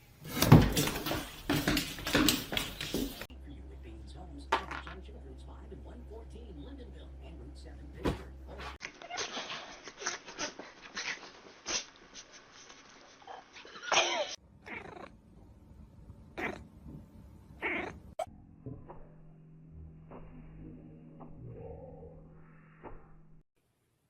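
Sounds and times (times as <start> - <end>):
cat yowling: 14.0 - 15.1, 16.4 - 16.6, 17.6 - 18.0.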